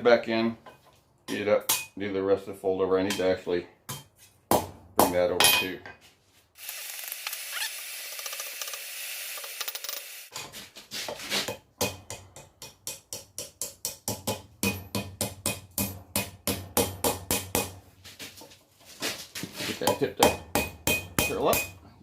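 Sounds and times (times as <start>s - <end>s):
hammer striking hot steel on anvil: 1.7s - 1.9s, 11.5s - 17.8s, 19.9s - 21.8s.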